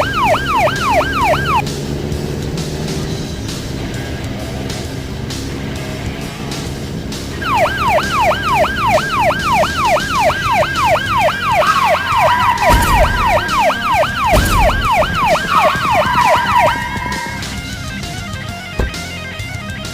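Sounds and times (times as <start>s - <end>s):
police siren fast sweeps: 0.0s - 1.6s, 7.4s - 17.7s.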